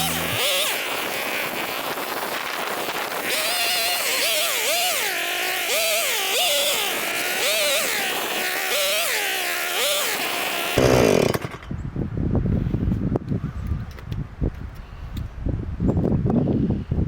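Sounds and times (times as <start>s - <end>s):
chainsaw cutting wood: 0.0s - 11.8s
wind on microphone: 11.0s - 17.0s.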